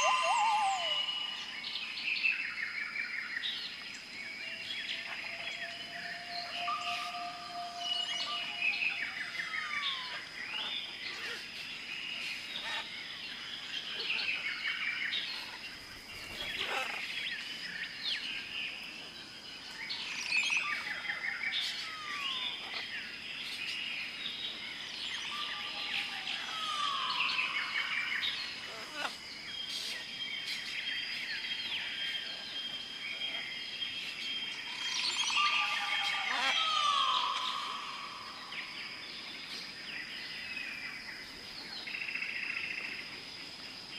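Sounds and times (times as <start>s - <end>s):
high-pitched insect drone: 0.0s - 1.8s, 5.0s - 10.7s
birds chirping and calling: 0.0s - 2.4s, 3.3s - 19.0s, 19.7s - 40.8s.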